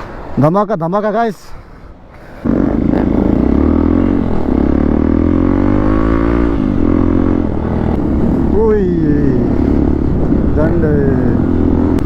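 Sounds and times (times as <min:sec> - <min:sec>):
loud motorcycle engine revving: 0:02.4 - 0:12.0.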